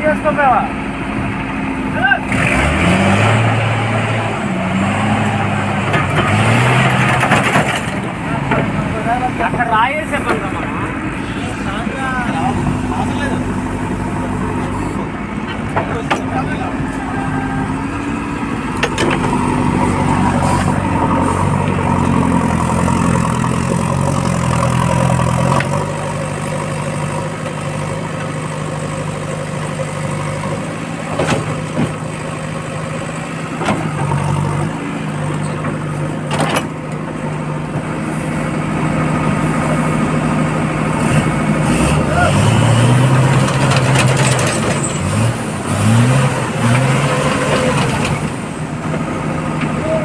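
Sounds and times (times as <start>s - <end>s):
heavy diesel engine under load: 0.0s - 50.0s
sharp engine knocks: 18.7s - 19.4s, 31.1s - 32.1s, 33.6s - 34.1s, 35.6s - 37.0s.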